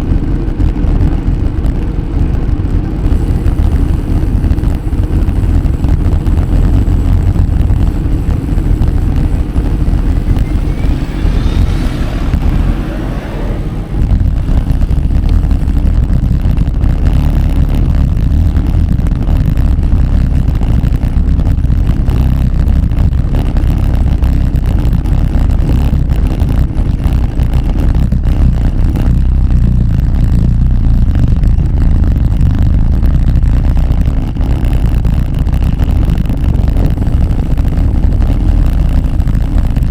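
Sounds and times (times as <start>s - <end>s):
wind buffeting microphone: 0.0s - 39.9s
rising whine: 3.0s - 21.8s.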